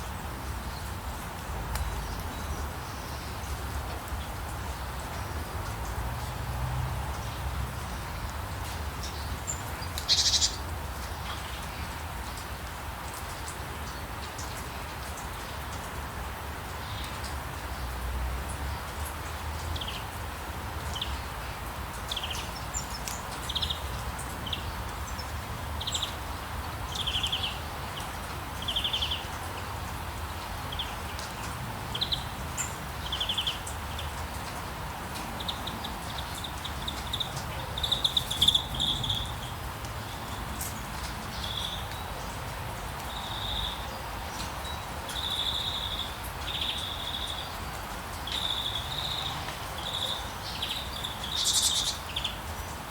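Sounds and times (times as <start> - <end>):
birds chirping and trilling: 10.1 - 10.6, 35.4 - 39.5, 48.3 - 52.4.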